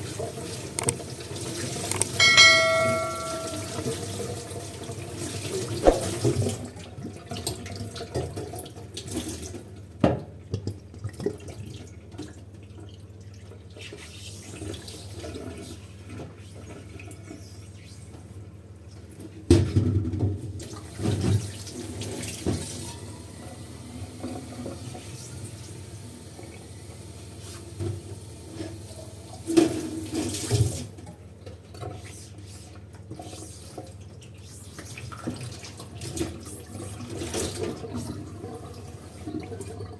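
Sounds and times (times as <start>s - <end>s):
dishes clinking: 1.9s - 4.0s.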